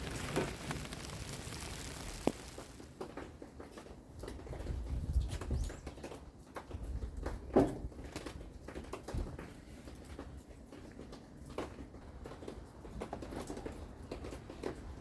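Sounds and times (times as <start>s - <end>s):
hands working potting soil: 0.0s - 4.3s.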